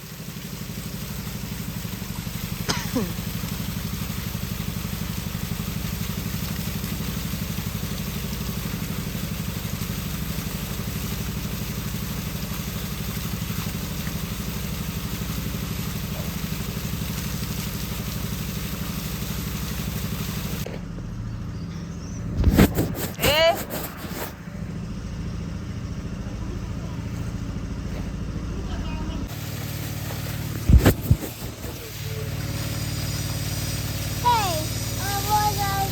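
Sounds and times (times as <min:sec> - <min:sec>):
water hissing: 0:00.0 - 0:20.7, 0:29.2 - 0:35.9
engine idling: 0:00.0 - 0:35.9.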